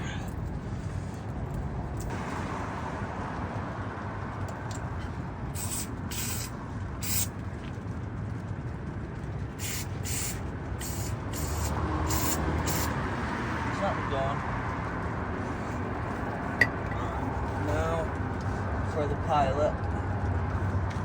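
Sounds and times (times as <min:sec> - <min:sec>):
aerosol spray hissing bursts: 0:05.6 - 0:07.3, 0:09.6 - 0:13.0.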